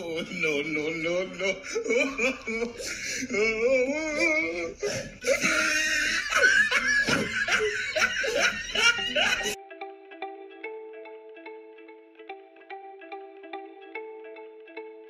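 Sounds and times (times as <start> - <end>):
people laughing: 0.0 - 9.6
plucked guitar music: 0.0 - 15.0.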